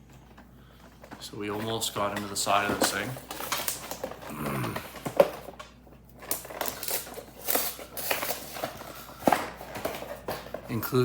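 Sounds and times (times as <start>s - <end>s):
packaging crinkling and rustling: 0.2s - 11.0s.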